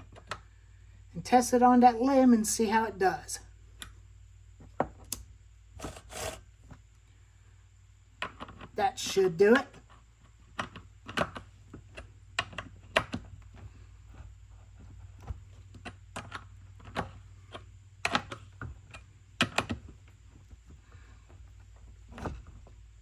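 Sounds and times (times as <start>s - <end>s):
low steady hum: 0.0s - 23.0s.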